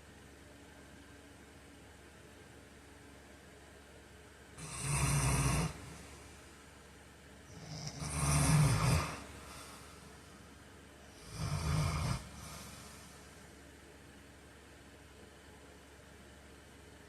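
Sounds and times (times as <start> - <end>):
man snoring: 4.6 - 6.2, 7.5 - 10.1, 11.1 - 13.3.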